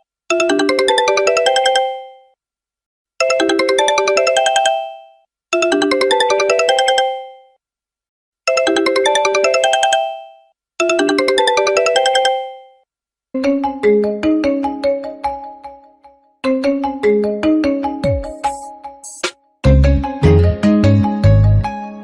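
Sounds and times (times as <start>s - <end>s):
mobile phone ringtone: 18.0s - 19.3s.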